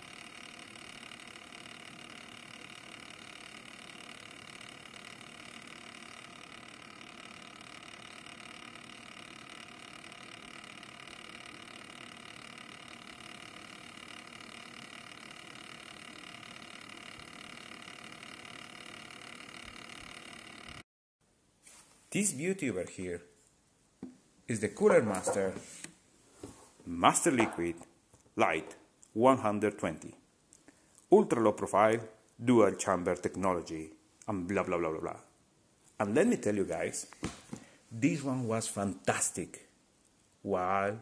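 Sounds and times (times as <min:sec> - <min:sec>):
computer cooler pump and fans whirring: 0:00.0 - 0:20.8.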